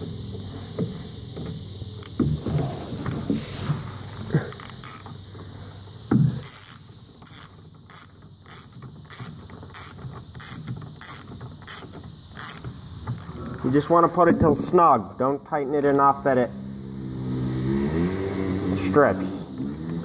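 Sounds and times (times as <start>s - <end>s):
socket ratchet clicking: 3.1s - 3.3s, 4.1s - 5.2s, 6.4s - 13.6s, 15.8s - 16.1s.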